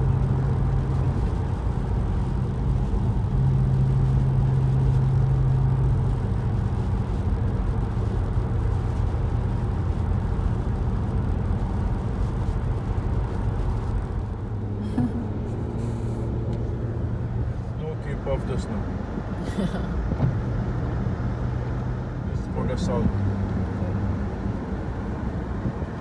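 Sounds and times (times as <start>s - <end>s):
car road and engine noise: 0.0s - 26.0s.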